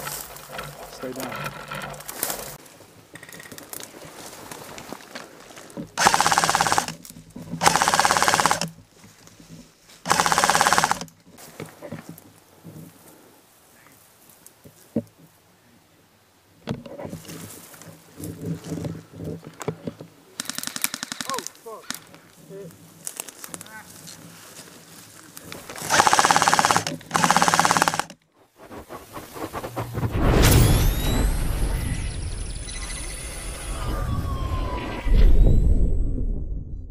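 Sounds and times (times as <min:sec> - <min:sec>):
airsoft gun firing bursts: 0:06.0 - 0:07.0, 0:07.6 - 0:08.7, 0:10.1 - 0:11.1, 0:20.4 - 0:22.0, 0:25.8 - 0:28.2
loud noise with falling tones: 0:28.9 - 0:36.9.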